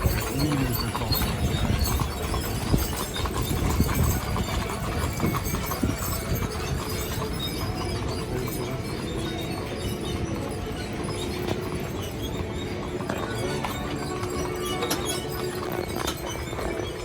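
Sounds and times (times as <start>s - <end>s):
horse hooves clip-clopping: 0.0s - 17.0s.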